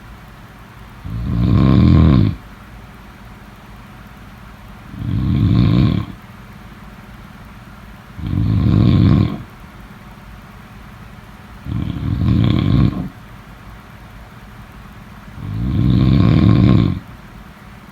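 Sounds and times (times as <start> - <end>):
person snoring: 1.0 - 2.4, 4.9 - 6.2, 8.2 - 9.5, 11.6 - 13.2, 15.4 - 17.1.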